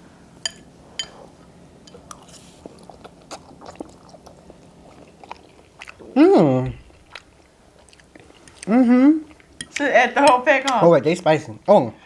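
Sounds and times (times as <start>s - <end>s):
people chewing noodles: 1.2s - 9.6s.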